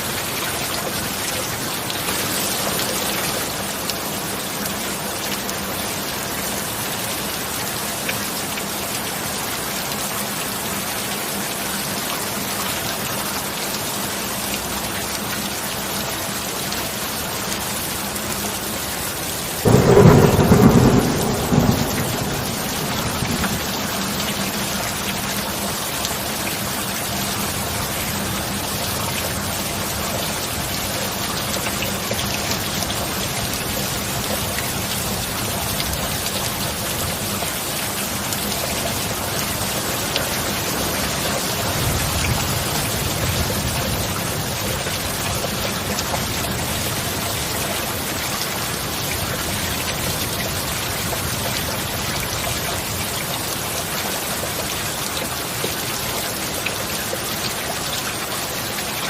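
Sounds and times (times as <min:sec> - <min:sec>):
heavy rain: 0:00.0 - 0:59.0
loud thunderclap: 0:19.7 - 0:24.7
low rumble of thunder: 0:19.7 - 0:25.8.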